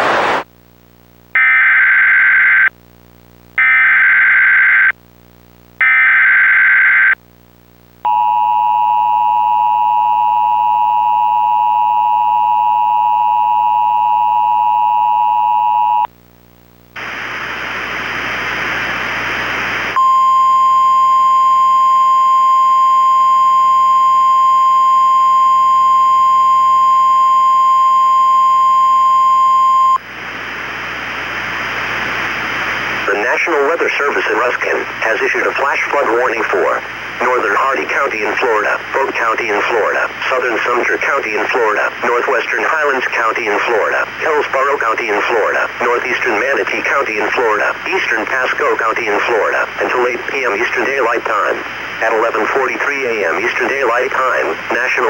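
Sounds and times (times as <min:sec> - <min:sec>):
radio hiss: 0:00.0 - 0:00.5, 0:16.9 - 0:20.0, 0:30.0 - 0:55.0
steady warning tone: 0:20.0 - 0:30.0
two-tone attention signal: 0:20.0 - 0:30.0.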